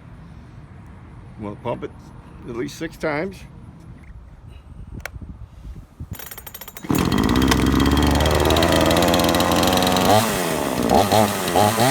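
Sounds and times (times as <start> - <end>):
chainsaw engine running: 6.2 - 11.9
starter cord cranking: 6.2 - 11.9.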